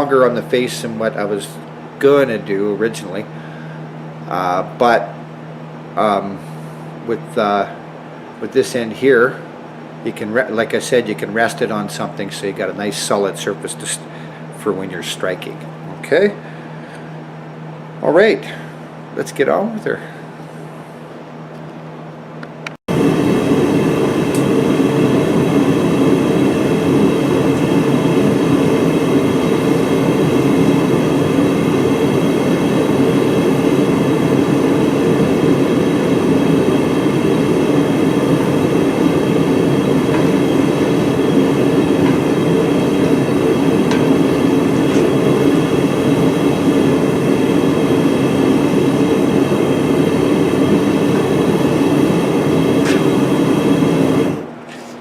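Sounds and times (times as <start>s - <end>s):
forge fire roaring: 22.9s - 54.5s.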